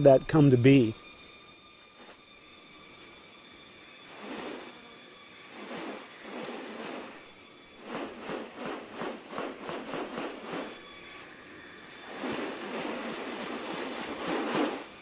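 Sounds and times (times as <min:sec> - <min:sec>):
insects high-pitched drone: 0:00.0 - 0:15.0.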